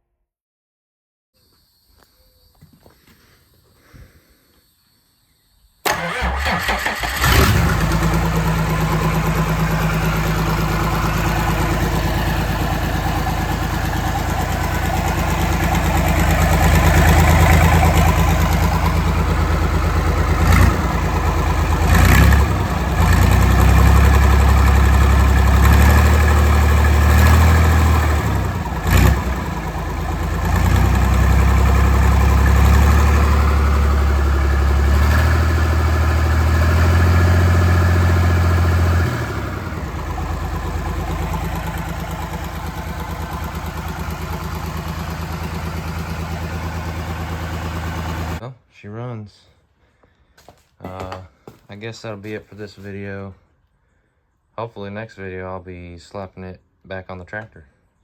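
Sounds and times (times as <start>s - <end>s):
diesel engine starting and running: 5.8s - 48.4s.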